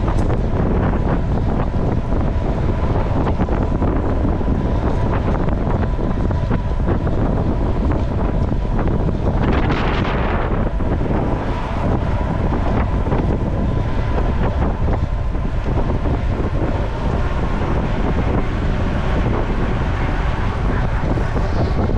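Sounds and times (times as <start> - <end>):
wind buffeting microphone: 0.0 - 21.9.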